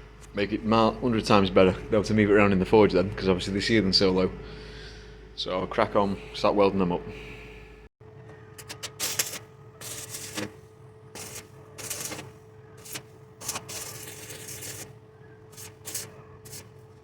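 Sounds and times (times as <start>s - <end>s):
steady hum: 0.0s - 17.0s
welding arc crackling: 9.0s - 10.6s, 11.2s - 16.8s.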